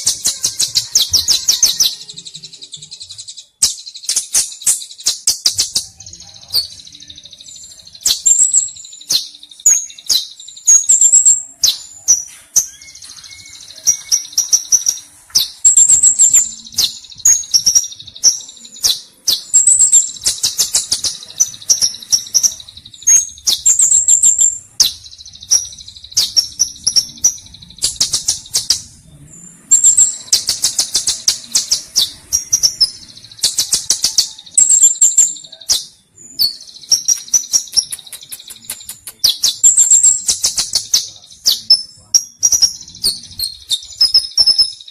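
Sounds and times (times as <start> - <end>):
sunbird singing: 0.0 - 44.9.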